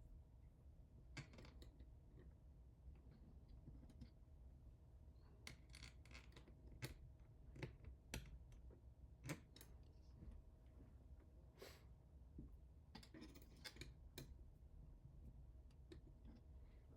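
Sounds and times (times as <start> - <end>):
low steady hum: 8.4 - 16.9.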